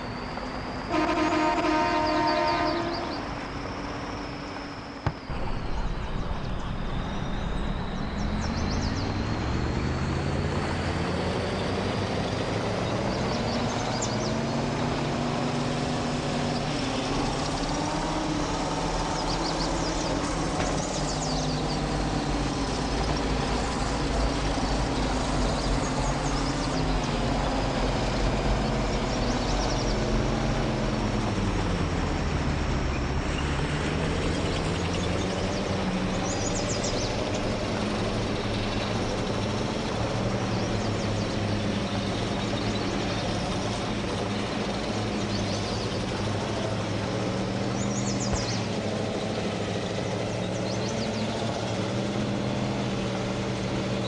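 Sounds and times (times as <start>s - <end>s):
horn sounding: 0.8s - 3.4s
heavy truck engine under load: 3.3s - 54.0s.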